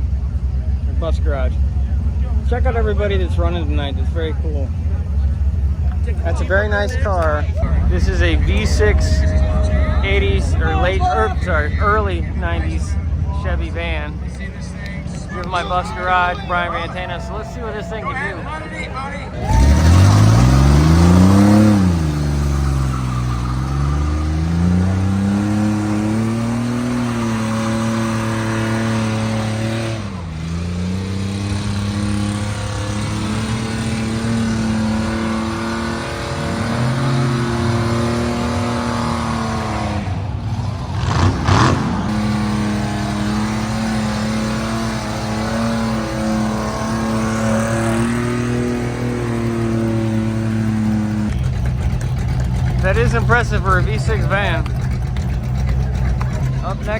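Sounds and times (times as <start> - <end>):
van engine revving hard: 0.0 - 56.9.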